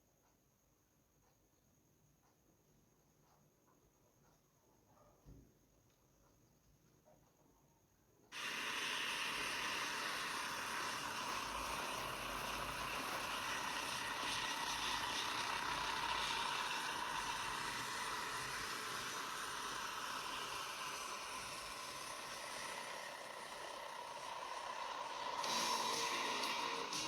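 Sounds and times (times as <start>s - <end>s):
remote-control helicopter running: 8.3s - 27.0s.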